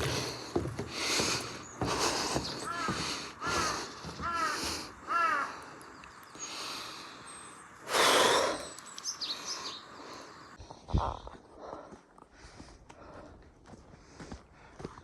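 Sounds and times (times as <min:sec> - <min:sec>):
bird harsh calls: 0:00.0 - 0:10.6
small birds chirping: 0:00.0 - 0:11.9.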